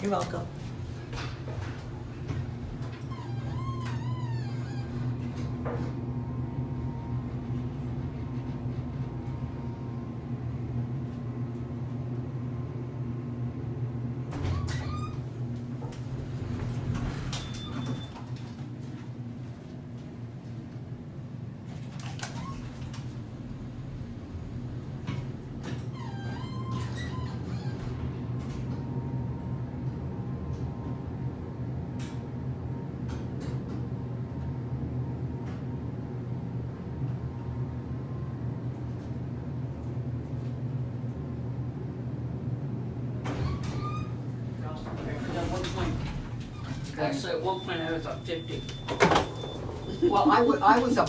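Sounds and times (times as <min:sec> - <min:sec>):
elevator clicks and clunks: 0:00.0 - 0:51.0
elevator humming: 0:00.0 - 0:51.0.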